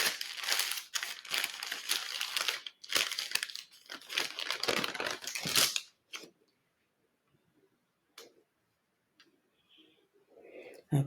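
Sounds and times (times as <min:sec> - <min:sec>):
glove wrapper crinkling: 0:00.0 - 0:06.3.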